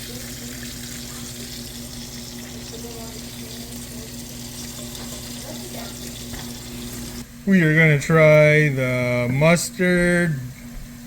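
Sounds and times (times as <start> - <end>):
oil sizzling in a frying pan: 0.0 - 7.2.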